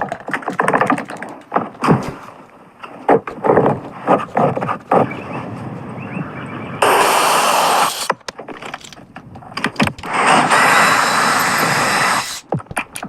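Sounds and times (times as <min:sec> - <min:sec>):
clicks and knocks: 0:00.0 - 0:05.1, 0:08.0 - 0:10.1
power tool running: 0:06.8 - 0:08.2, 0:10.0 - 0:12.4.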